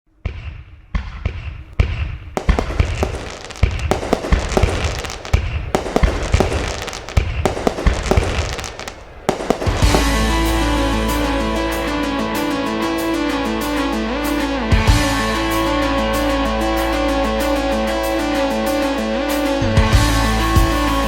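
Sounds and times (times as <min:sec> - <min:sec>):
fireworks bangs and crackles: 0:01.7 - 0:12.3.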